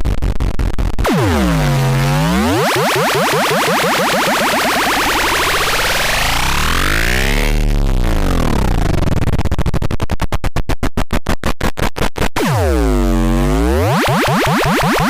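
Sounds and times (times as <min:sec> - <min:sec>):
rapid stuttering electronic chops: 0:01.0 - 0:15.0
buzzy electronic pitch swoops: 0:01.1 - 0:07.7.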